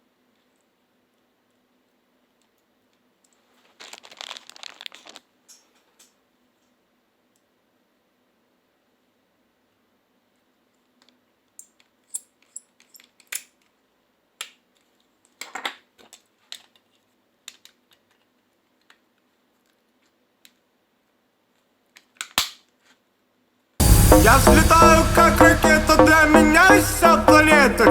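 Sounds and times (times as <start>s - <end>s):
clicks and taps of small parts: 11.0s - 13.7s, 14.4s - 19.0s, 21.9s - 22.6s.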